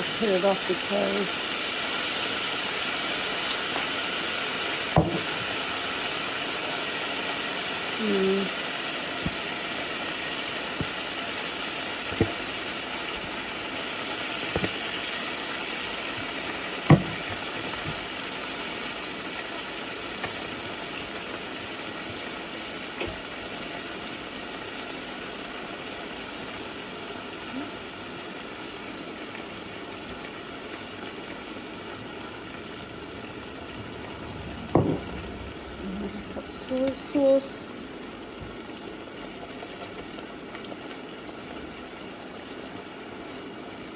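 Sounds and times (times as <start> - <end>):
food cooking hiss: 0.0 - 43.9
light knocks: 34.7 - 35.2.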